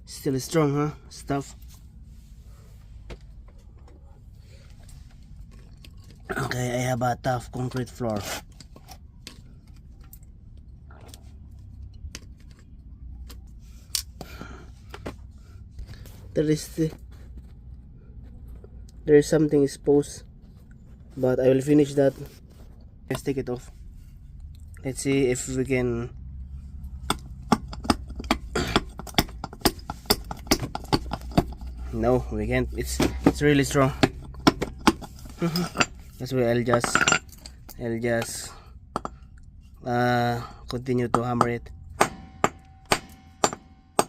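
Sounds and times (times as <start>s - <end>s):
steady low hum: 0.0s - 44.0s
metallic clinks and knocks: 26.7s - 39.7s, 41.0s - 44.0s.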